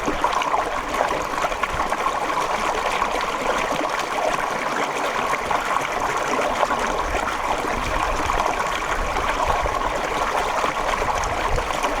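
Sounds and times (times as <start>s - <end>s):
water trickling and babbling: 0.0s - 12.0s.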